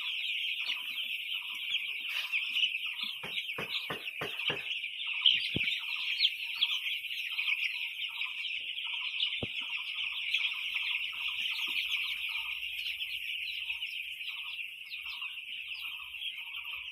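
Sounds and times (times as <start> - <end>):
chickens clucking: 0.0 - 16.9
chickens peeping: 0.0 - 16.9
sharp knock: 3.2 - 4.7.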